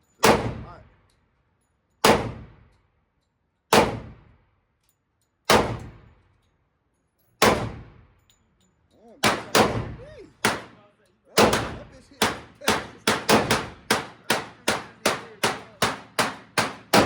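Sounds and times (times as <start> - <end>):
gunshots with ringing echo: 0.2 - 0.7, 2.0 - 2.6, 3.7 - 4.4, 5.5 - 6.1, 7.4 - 8.0, 9.2 - 10.8, 11.4 - 17.0.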